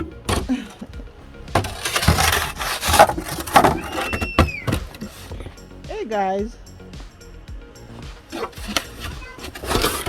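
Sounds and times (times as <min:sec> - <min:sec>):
snow shovel scraping snow: 0:01.6 - 0:05.5, 0:08.3 - 0:10.0
high squeak sliding down: 0:03.5 - 0:05.3.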